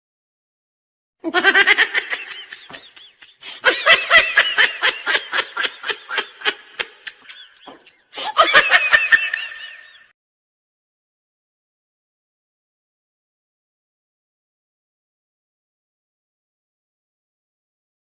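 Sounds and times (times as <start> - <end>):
high-pitched laughter: 1.2 - 10.1.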